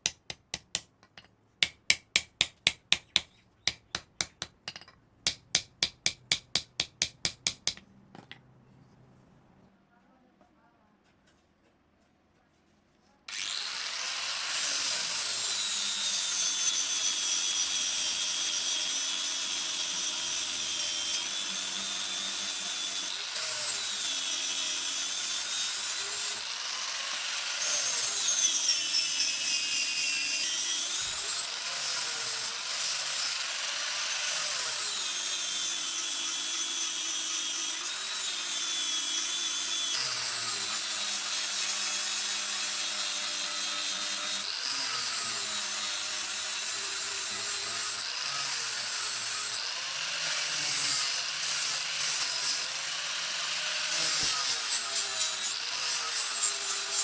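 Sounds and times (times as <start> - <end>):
electric grinder whining: 13.3 - 57.0.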